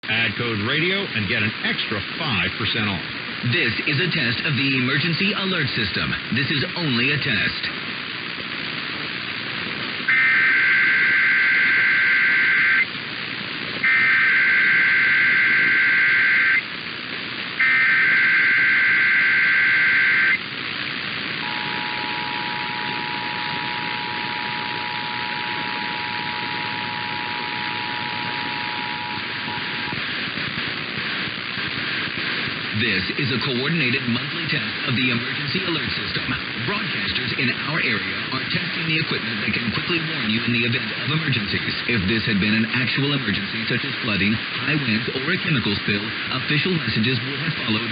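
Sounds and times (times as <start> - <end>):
radio hiss: 0.0 - 47.9
buzzy data bursts: 8.2 - 41.4
two-tone attention signal: 10.1 - 12.9, 13.8 - 16.6, 17.6 - 20.4, 21.4 - 30.0.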